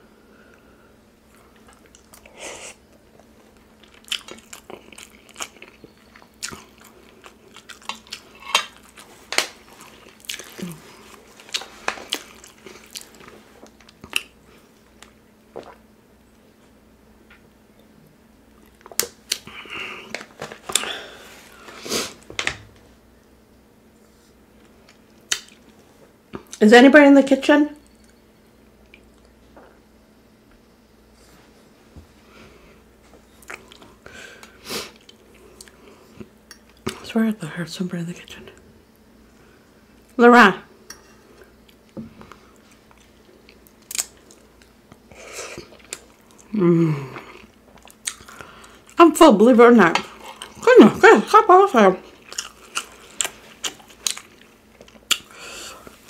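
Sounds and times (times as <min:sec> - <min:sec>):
person chewing with mouth sounds: 0:01.3 - 0:15.9, 0:33.4 - 0:37.0, 0:40.9 - 0:49.0, 0:50.0 - 0:50.8, 0:52.0 - 0:56.0.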